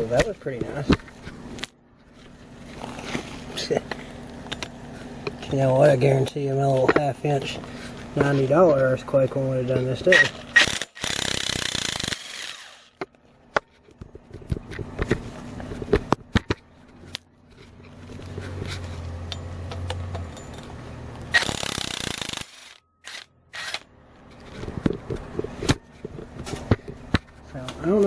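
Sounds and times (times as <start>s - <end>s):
metal parts clicking and scraping: 16.9s - 28.0s.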